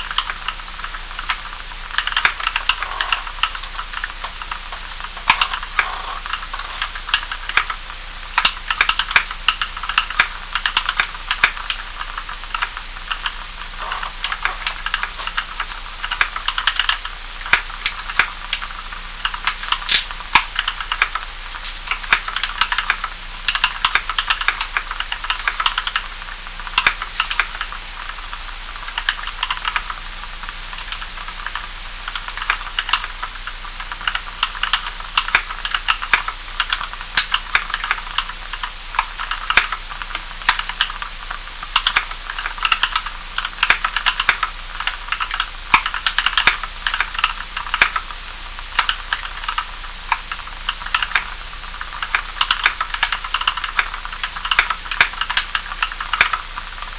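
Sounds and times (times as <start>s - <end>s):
mechanical keyboard typing: 2.0s - 7.8s, 8.4s - 21.3s, 41.7s - 48.0s, 48.8s - 56.8s.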